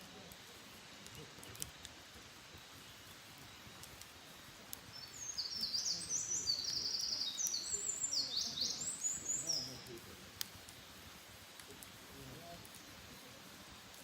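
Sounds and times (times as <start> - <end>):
songbird twittering: 4.9 - 9.9.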